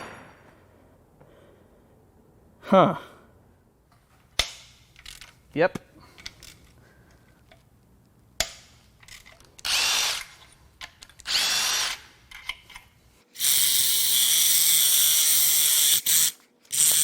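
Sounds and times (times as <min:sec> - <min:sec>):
power tool spinning: 0:11.2 - 0:12.1, 0:13.4 - 0:17.0.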